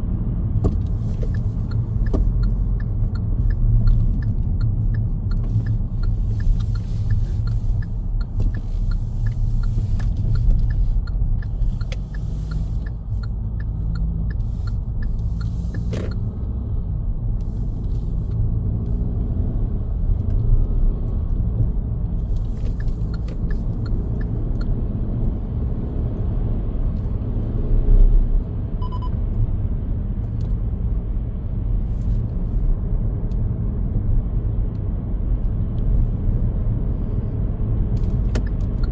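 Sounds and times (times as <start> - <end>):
car tyres and engine rumbling: 0.0 - 38.9
faint light ticks: 0.6 - 16.4, 17.3 - 25.4, 30.2 - 30.6, 33.2 - 33.5, 34.7 - 36.2, 37.9 - 38.9.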